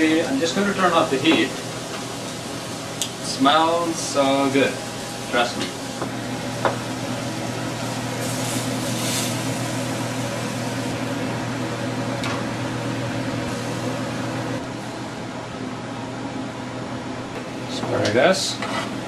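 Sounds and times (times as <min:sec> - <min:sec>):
fan humming: 0:00.0 - 0:19.0
hiss: 0:08.2 - 0:09.9.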